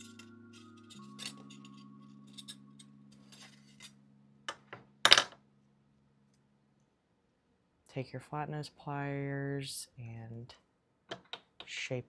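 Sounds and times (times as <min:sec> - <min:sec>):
wire and pliers clinking: 0:00.0 - 0:02.6
faint background music: 0:00.0 - 0:06.4.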